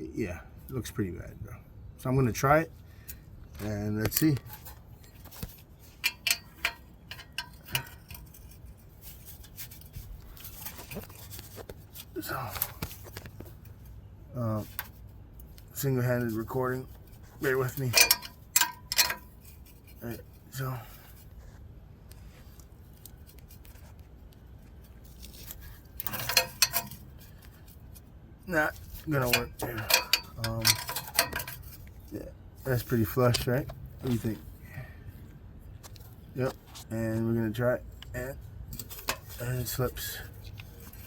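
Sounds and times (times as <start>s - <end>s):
metal socket clicking and scraping: 4.0s - 13.9s, 14.6s - 21.3s, 22.6s - 28.0s, 28.6s - 34.4s, 37.8s - 41.0s
metal tools clinking: 4.1s - 13.1s, 15.7s - 21.2s, 25.0s - 34.8s, 37.9s - 41.0s
metal clinks: 5.9s - 10.0s, 17.4s - 20.0s, 25.2s - 27.7s, 28.7s - 32.0s.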